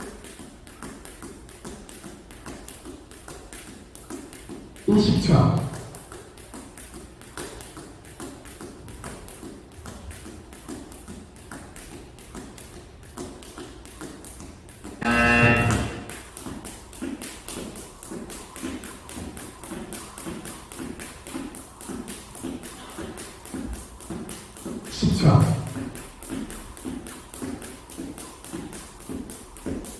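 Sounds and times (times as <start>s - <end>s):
jump rope slapping the floor: 0.0s - 15.0s, 15.6s - 29.9s
loud electronic beep: 15.0s - 16.1s.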